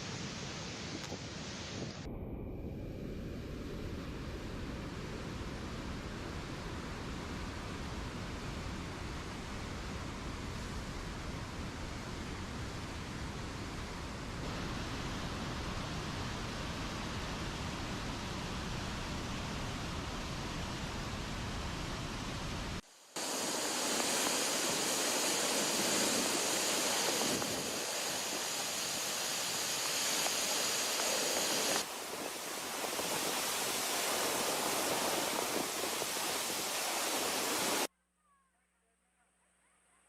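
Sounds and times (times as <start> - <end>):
floodwater rushing: 23.2 - 37.9.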